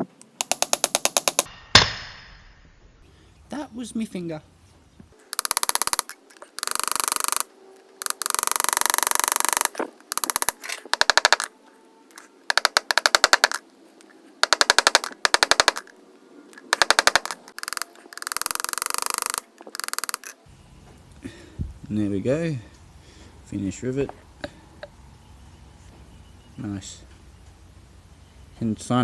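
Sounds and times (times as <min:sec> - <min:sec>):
hammer tapping on metal rivet: 0:00.4 - 0:01.5, 0:08.0 - 0:11.5, 0:12.1 - 0:13.6, 0:14.4 - 0:15.9.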